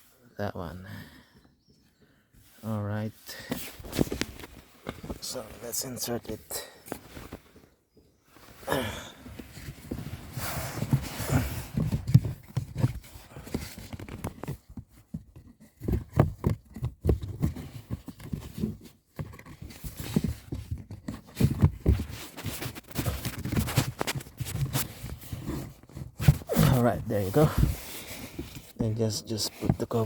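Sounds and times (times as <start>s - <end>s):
plastic knocks and scrapes: 9.5s - 30.0s.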